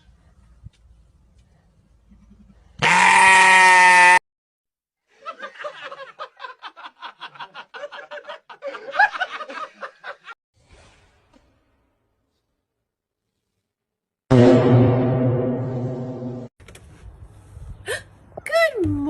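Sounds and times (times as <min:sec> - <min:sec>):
goat bleating: 0:02.8 - 0:04.2.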